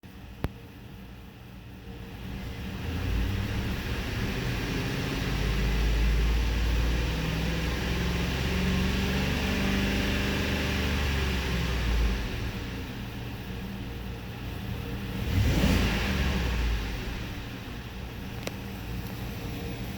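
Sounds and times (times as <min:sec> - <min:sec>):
car engine running: 0:00.1 - 0:19.9.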